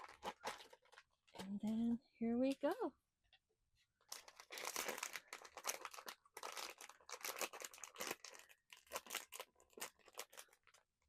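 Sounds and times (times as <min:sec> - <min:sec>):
packaging crinkling and tearing: 0:00.0 - 0:01.8, 0:04.0 - 0:11.0.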